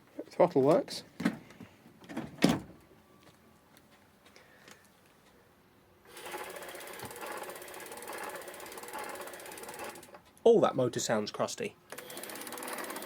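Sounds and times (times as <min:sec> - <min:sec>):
electric bike motor whirring: 0:06.1 - 0:10.2, 0:11.9 - 0:13.0.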